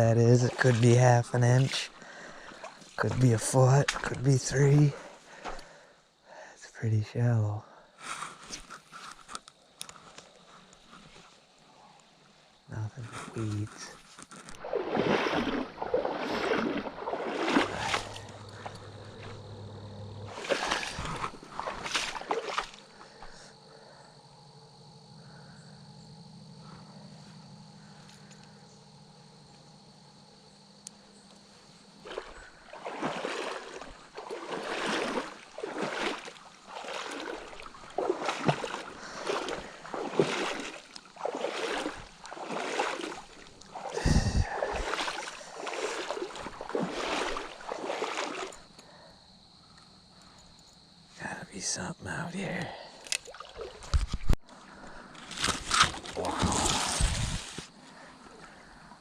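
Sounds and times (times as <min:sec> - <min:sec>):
footsteps sloshing through water: 0:00.0 - 0:05.8, 0:13.0 - 0:23.5, 0:31.4 - 0:49.0, 0:53.0 - 0:58.9.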